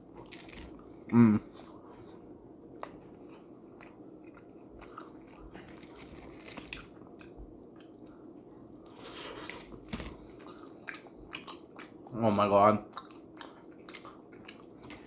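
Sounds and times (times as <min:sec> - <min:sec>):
person chewing crunchy food: 0:00.0 - 0:12.2, 0:12.8 - 0:15.0.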